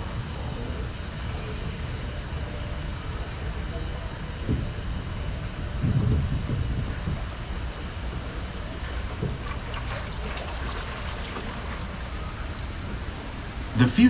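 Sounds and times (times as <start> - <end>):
boat rumbling: 0.0 - 14.0
water trickling and lapping: 8.8 - 13.6.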